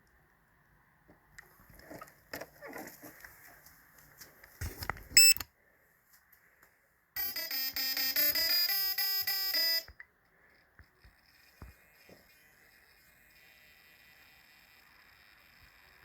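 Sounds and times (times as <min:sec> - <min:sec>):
stepped electronic beep: 0:05.2 - 0:05.4
motor startup tones: 0:11.2 - 0:16.0.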